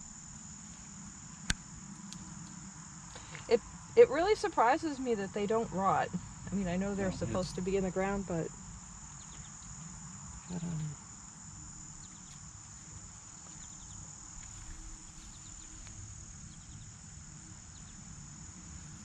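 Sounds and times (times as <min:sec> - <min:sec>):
insect chorus drone: 0:00.0 - 0:19.0
voice murmur: 0:07.0 - 0:07.6.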